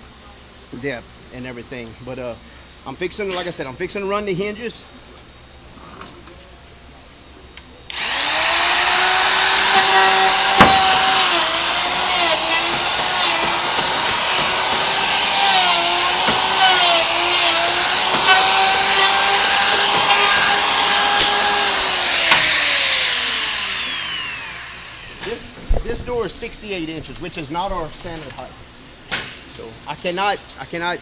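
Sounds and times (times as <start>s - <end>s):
motor whine of hinge machine: 7.9s - 28.5s.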